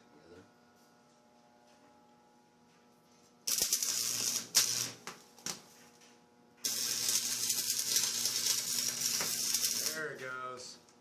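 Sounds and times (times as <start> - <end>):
welding arc crackling and sizzling: 3.4 - 5.7, 6.6 - 10.8.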